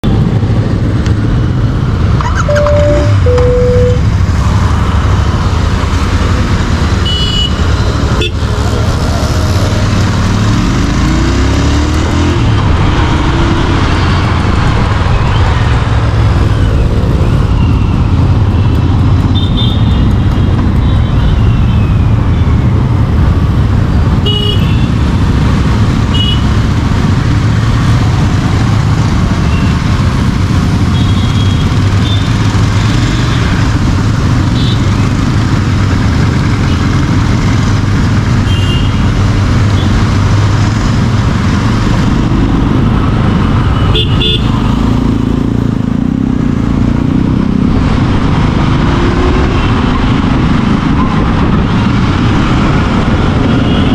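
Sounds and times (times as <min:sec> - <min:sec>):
vehicle horn toots: 0:02.5 - 0:04.0, 0:07.0 - 0:07.6.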